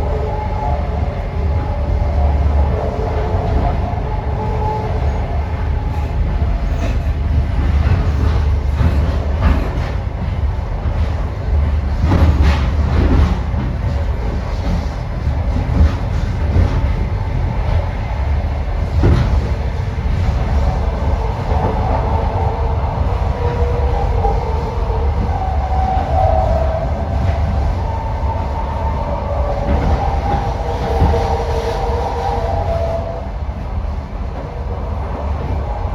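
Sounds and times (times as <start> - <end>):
high train whine: 0.0 - 35.9
train carriages rumbling: 0.0 - 35.9
train wheel knocks: 6.7 - 11.2, 18.8 - 19.6.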